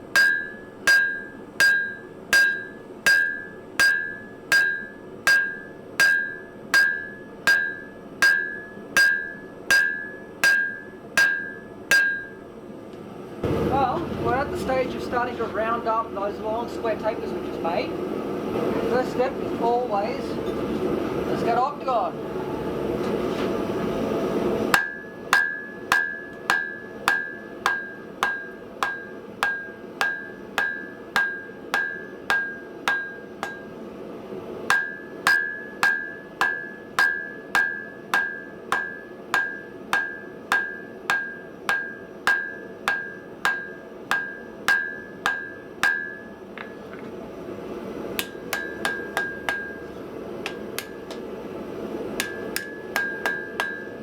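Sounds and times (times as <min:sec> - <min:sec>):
hammer striking steel on anvil: 0:00.0 - 0:12.5, 0:24.7 - 0:33.9, 0:34.6 - 0:47.1, 0:48.1 - 0:51.4, 0:52.1 - 0:54.0.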